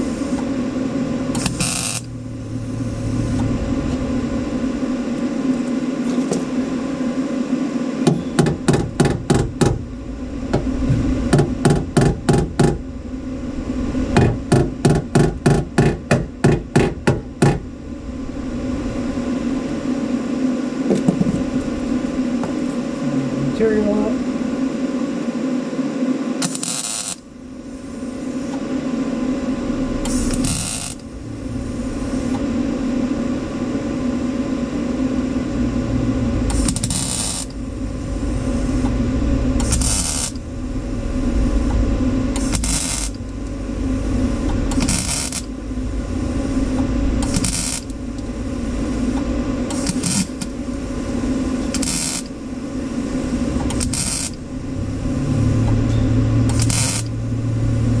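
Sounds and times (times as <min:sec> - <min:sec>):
steady fan hum: 0:00.0 - 0:58.0
welding arc crackle: 0:01.3 - 0:07.2, 0:26.4 - 0:31.2, 0:36.3 - 0:45.8, 0:46.4 - 0:54.6, 0:56.4 - 0:57.3.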